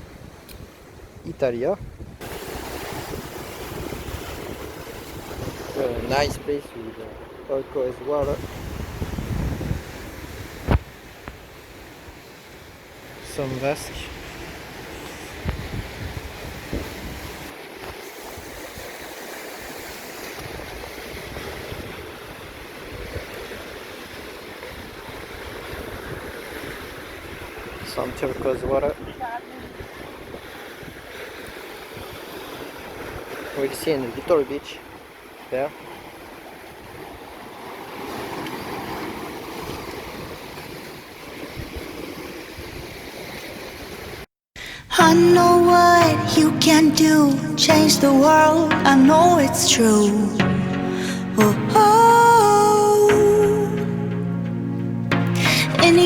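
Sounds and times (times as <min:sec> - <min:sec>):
wind buffeting microphone: 0:00.0 - 0:07.5, 0:08.2 - 0:12.2, 0:14.1 - 0:17.5
sea surf rushing: 0:00.0 - 0:30.9, 0:44.6 - 0:56.0.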